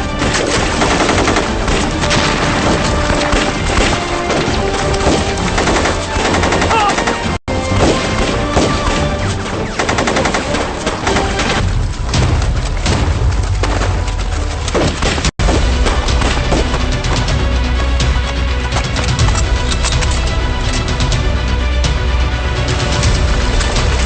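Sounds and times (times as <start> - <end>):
automatic gunfire: 0.5 - 11.6.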